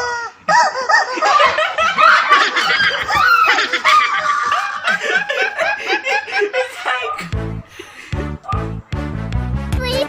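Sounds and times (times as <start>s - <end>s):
people laughing: 1.0s - 8.7s.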